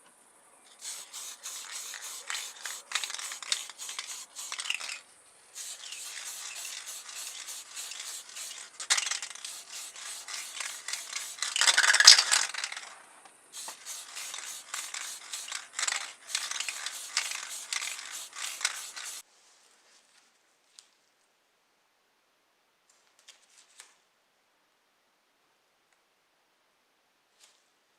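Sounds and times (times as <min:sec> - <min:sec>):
scraping and scrubbing model car: 0:00.8 - 0:05.0, 0:05.6 - 0:12.9, 0:13.6 - 0:19.2.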